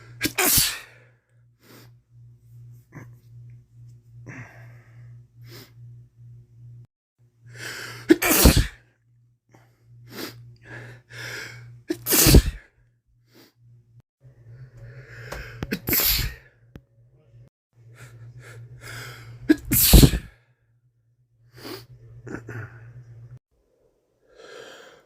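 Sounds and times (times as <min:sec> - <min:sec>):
man sneezing: 0:00.2 - 0:00.9, 0:08.1 - 0:08.8, 0:11.9 - 0:12.6, 0:15.7 - 0:16.4, 0:19.5 - 0:20.3.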